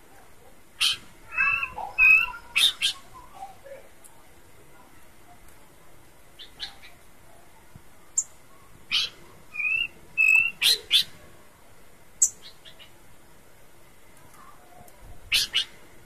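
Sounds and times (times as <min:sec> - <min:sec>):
whistled bird notes: 0:00.8 - 0:03.4, 0:08.9 - 0:11.1.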